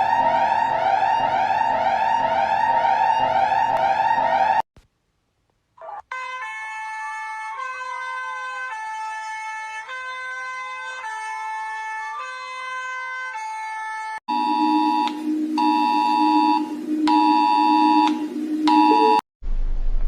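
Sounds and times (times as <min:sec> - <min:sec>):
siren-like gliding tone: 0:00.0 - 0:04.6, 0:14.3 - 0:19.2
sweeping electronic alarm tone: 0:00.0 - 0:04.6, 0:14.3 - 0:19.2
stepping electronic tone chord: 0:14.3 - 0:19.2.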